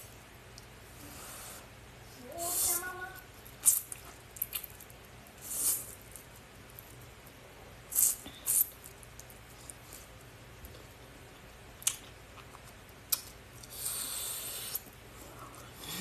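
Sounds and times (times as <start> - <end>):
hissing chewing bursts: 2.4 - 3.0, 13.6 - 14.8
wet mouth clicks: 11.8 - 12.5.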